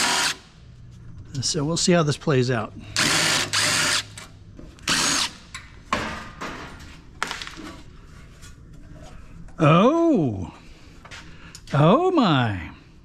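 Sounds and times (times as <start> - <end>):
power drill running in bursts: 0.0 - 0.4, 3.0 - 4.1, 4.8 - 5.4.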